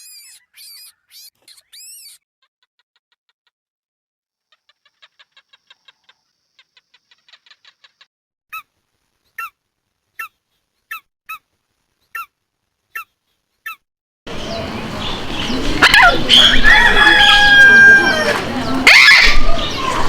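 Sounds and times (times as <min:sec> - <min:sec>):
animal chirps: 0:00.0 - 0:02.8.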